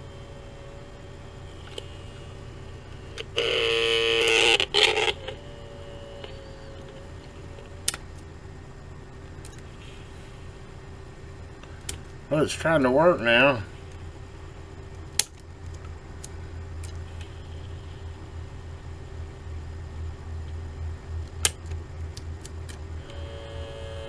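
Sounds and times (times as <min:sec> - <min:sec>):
loud buzzing tone: 0:00.0 - 0:08.0, 0:17.0 - 0:20.4, 0:22.9 - 0:24.0
faint steady hum: 0:00.0 - 0:24.0
sharp clicks: 0:14.9 - 0:17.3.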